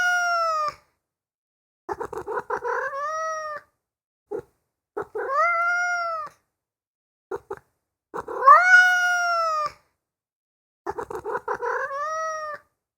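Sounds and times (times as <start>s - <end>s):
cat meowing: 0.0s - 0.8s, 1.9s - 3.7s, 5.0s - 6.4s, 8.2s - 9.8s, 10.9s - 12.7s
cat chirps: 1.9s - 3.7s, 5.0s - 6.4s, 8.2s - 9.8s, 10.9s - 12.7s.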